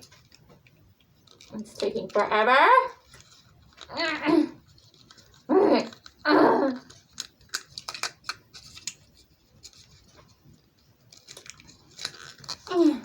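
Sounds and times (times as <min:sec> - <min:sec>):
plastic toy parts clicking: 0:06.9 - 0:09.9.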